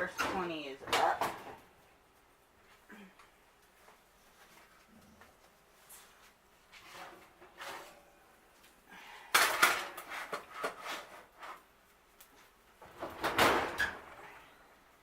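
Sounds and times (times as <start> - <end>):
oven door opening: 12.8 - 14.5.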